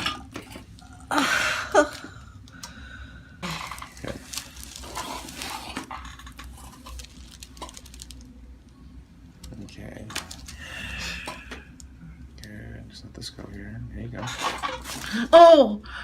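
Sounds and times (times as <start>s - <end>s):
person breathing out hard: 10.5s - 11.7s.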